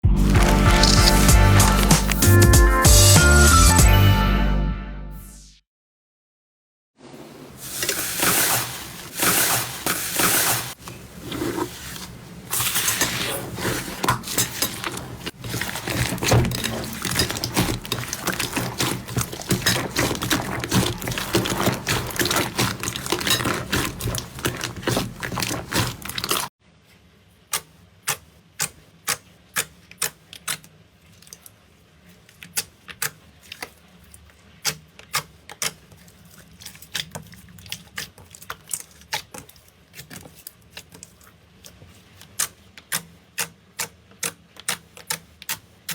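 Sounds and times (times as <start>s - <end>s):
slime squelching and crackling: 0.2s - 2.4s, 7.6s - 26.5s, 32.2s - 43.5s.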